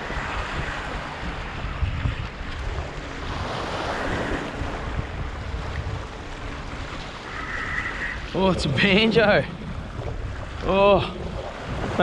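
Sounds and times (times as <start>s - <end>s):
sea waves washing over rocks: 0.0s - 12.0s
wind buffeting microphone: 0.0s - 12.0s.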